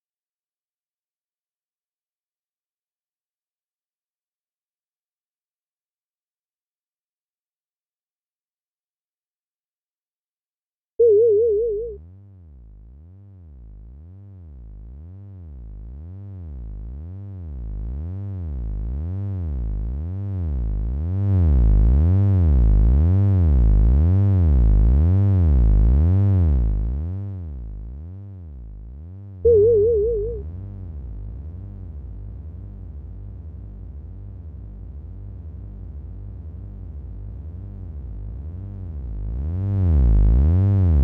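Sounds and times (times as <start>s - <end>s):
warbling electronic beep: 11.0s - 12.0s, 29.5s - 30.5s
low sweeping synth tone: 11.0s - 41.0s.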